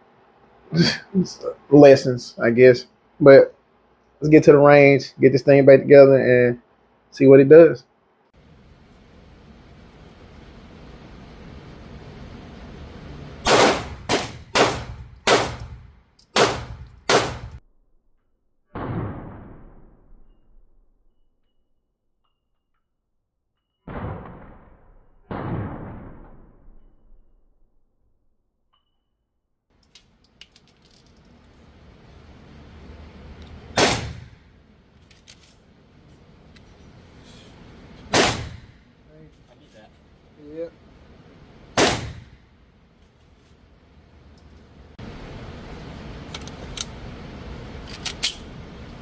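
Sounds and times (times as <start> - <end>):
pistol shots echoing: 13.5 - 15.8, 16.4 - 17.6, 33.8 - 34.4, 38.1 - 38.8, 41.8 - 42.4.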